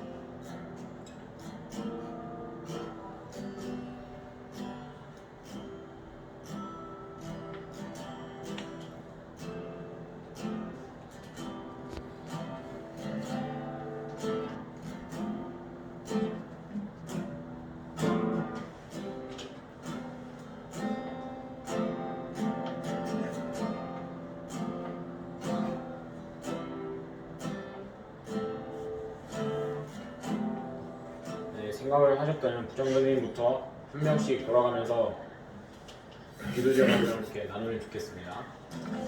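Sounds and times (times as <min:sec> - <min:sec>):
acoustic guitar strumming: 0:00.0 - 0:37.4, 0:38.5 - 0:39.0.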